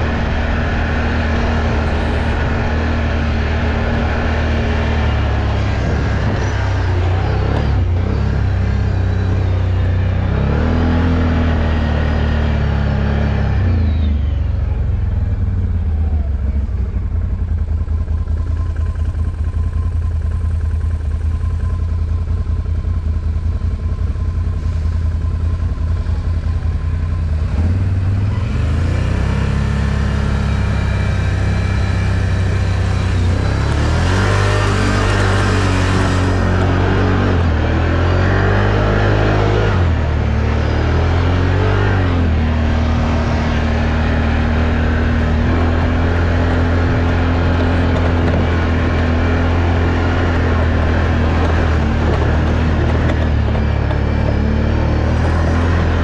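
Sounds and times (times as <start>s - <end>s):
off-road vehicle engine revving: 0.0s - 56.0s.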